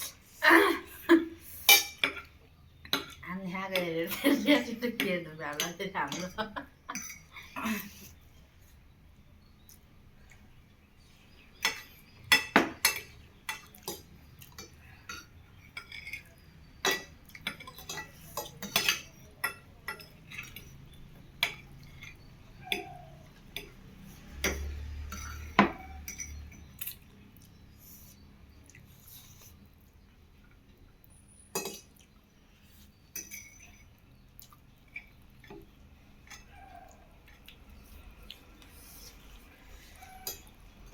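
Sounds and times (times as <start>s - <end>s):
cutlery clinking on plates: 1.7s - 3.2s, 11.6s - 20.8s, 21.4s - 26.7s, 31.5s - 32.0s, 33.1s - 34.0s.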